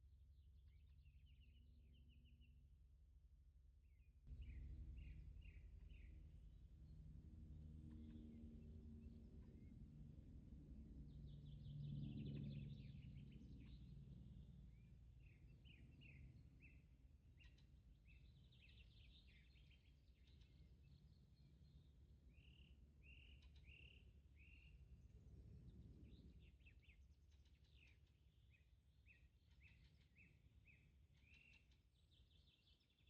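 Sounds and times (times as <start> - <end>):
low steady hum: 0.0 - 33.0
birds chirping and trilling: 4.3 - 6.2, 7.8 - 9.8, 11.1 - 25.0, 25.6 - 33.0.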